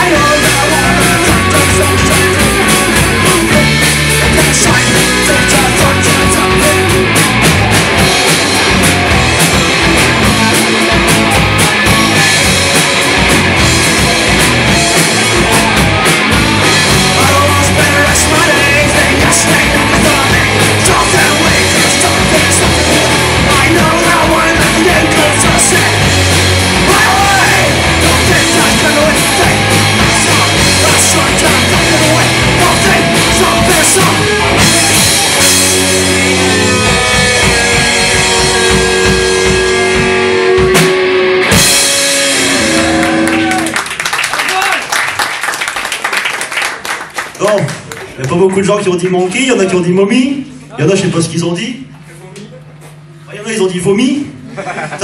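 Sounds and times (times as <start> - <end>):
distorted electric guitar: 0.0 - 44.0
driving drum kit: 0.0 - 47.9.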